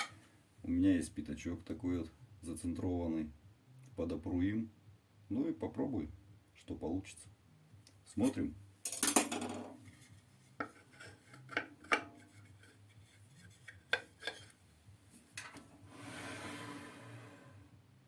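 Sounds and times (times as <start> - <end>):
metal parts clinking: 8.9 - 9.5
soft rubbing and scraping: 9.8 - 17.7.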